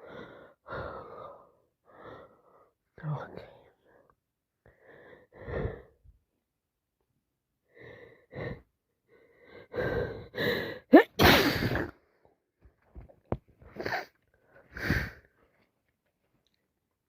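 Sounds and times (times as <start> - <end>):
person breathing: 0.0 - 2.8, 3.7 - 6.1, 7.6 - 10.9, 13.7 - 15.5
loud sneeze: 10.9 - 12.0.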